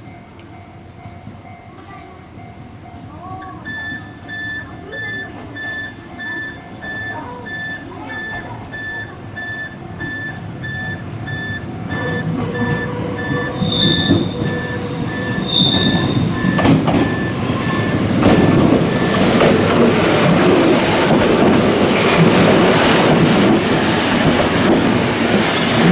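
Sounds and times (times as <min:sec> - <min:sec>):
train rumbling: 0:00.0 - 0:25.9
level crossing warning buzzer: 0:03.6 - 0:19.9
train wheel squeal: 0:03.7 - 0:20.2.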